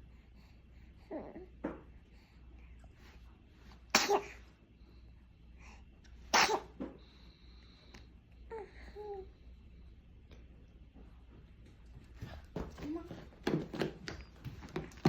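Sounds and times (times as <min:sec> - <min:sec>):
baby coughing: 0:03.9 - 0:04.5, 0:06.3 - 0:06.8.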